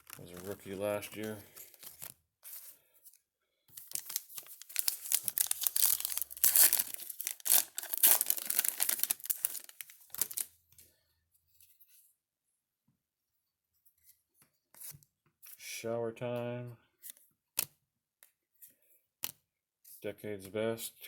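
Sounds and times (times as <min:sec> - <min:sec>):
plastic foil wrapper tearing: 0:00.0 - 0:02.2, 0:03.8 - 0:10.5.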